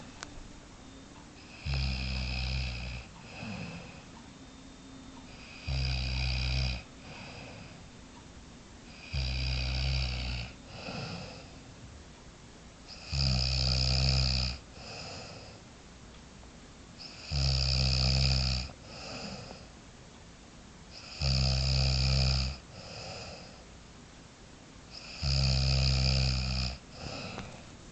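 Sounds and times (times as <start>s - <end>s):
person snoring: 1.4s - 4.1s, 5.3s - 7.8s, 8.9s - 11.6s, 12.9s - 15.6s, 17.0s - 19.7s, 20.9s - 23.6s, 24.9s - 27.7s.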